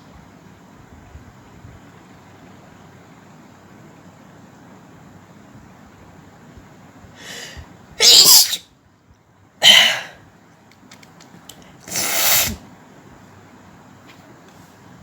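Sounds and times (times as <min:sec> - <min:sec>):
short breath in: 0:07.2 - 0:07.7, 0:09.6 - 0:10.2
woman sneezing: 0:07.2 - 0:08.6, 0:09.6 - 0:10.2, 0:11.9 - 0:12.6.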